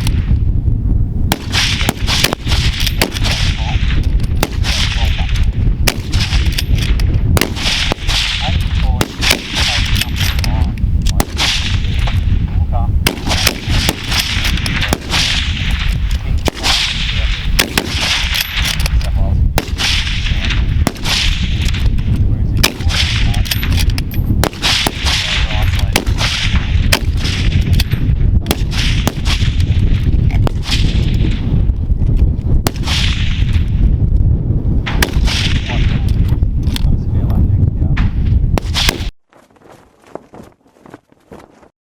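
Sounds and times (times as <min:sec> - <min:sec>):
low rumble: 0:00.0 - 0:39.1
rifle gunshots: 0:01.3 - 0:12.4, 0:13.0 - 0:31.4, 0:32.6 - 0:33.7, 0:34.9 - 0:36.1, 0:38.0 - 0:39.1.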